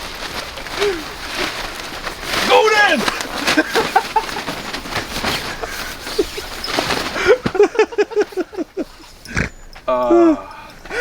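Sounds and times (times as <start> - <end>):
rustling: 0.0 - 11.0
man laughing: 2.9 - 4.6, 7.2 - 9.0.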